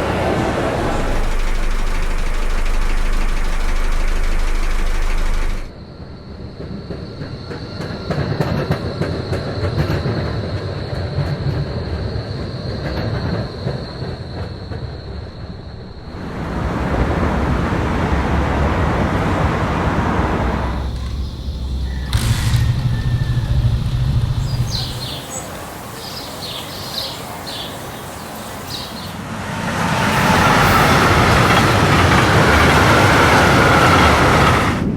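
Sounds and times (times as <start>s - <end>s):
steady high whine: 0.0s - 5.7s, 20.3s - 32.7s
train wheels clicking: 0.0s - 5.7s, 20.7s - 34.9s
train rumbling on rails: 0.0s - 34.9s.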